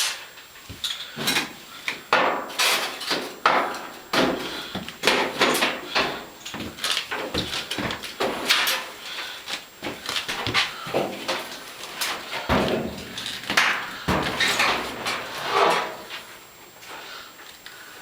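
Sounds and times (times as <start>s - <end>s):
knocks and clunks on sheet metal: 2.1s - 8.8s, 10.3s - 16.0s.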